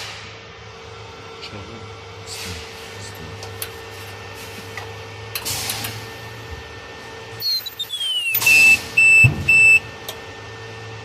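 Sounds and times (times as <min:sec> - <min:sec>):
falling electronic whine: 0:07.4 - 0:09.9
loud high-pitched tones: 0:07.4 - 0:09.9.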